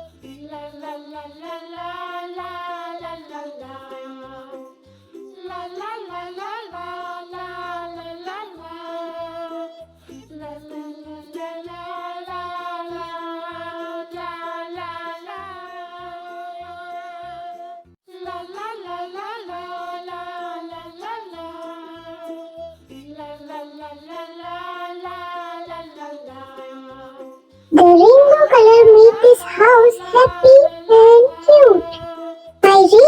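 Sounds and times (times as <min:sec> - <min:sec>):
high singing voice: 0:27.8 - 0:33.0.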